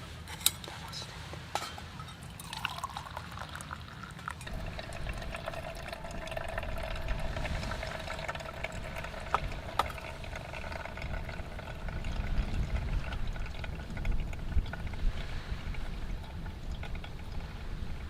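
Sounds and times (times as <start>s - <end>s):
water bubbling in pot: 2.2s - 18.0s
low rumble: 4.5s - 18.0s.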